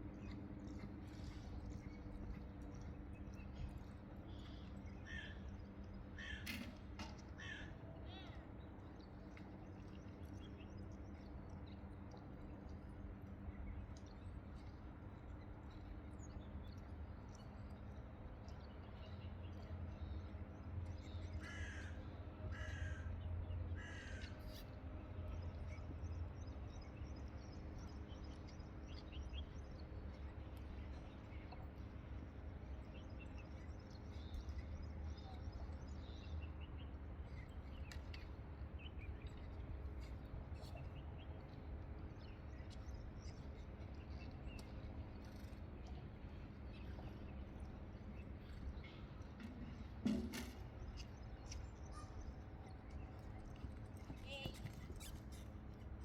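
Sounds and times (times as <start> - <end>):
low outdoor hum: 0.0 - 56.0
bird cawing: 6.2 - 6.4, 21.4 - 23.1, 23.8 - 24.3.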